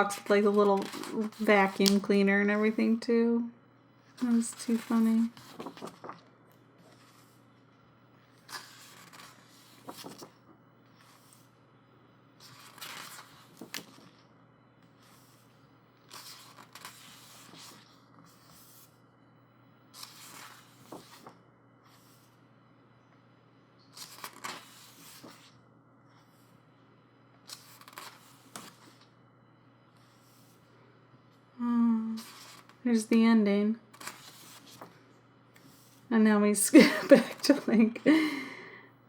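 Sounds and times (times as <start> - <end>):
pages being turned: 0.2 - 2.7, 4.2 - 7.4, 8.4 - 11.5, 12.4 - 14.2, 16.1 - 18.9, 20.0 - 22.3, 23.9 - 25.6, 27.5 - 29.1, 32.2 - 32.8, 34.0 - 35.0.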